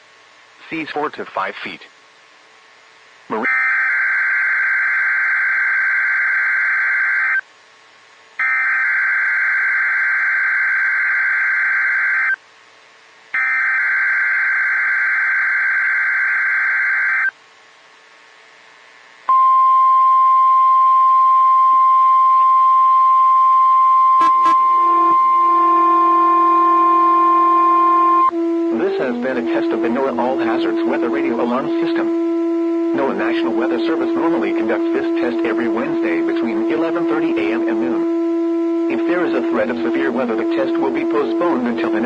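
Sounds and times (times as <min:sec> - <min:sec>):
steady alarm tone: 0:03.4 - 0:07.4, 0:08.4 - 0:12.4, 0:13.3 - 0:17.3, 0:19.3 - 0:42.0.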